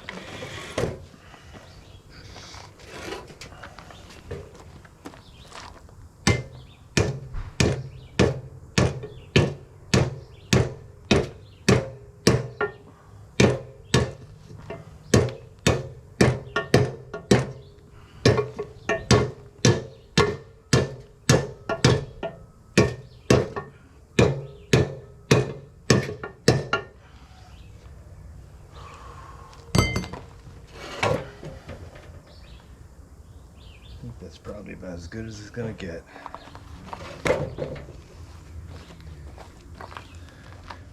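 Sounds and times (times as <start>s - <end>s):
hammer striking steel: 6.3s - 12.8s, 18.3s - 26.9s, 29.8s - 30.2s.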